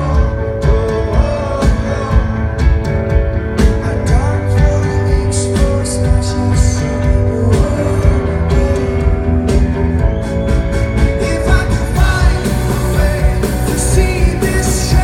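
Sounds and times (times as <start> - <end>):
live rock band playing: 0.0 - 15.0.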